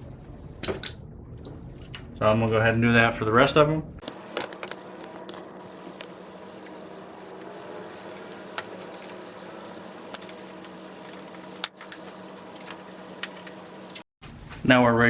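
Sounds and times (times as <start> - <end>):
steady background hum: 4.0 - 14.1.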